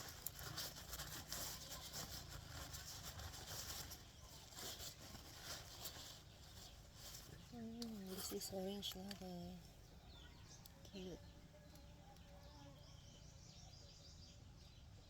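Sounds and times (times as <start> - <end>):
packaging rustling and crackling: 0.0 - 9.4.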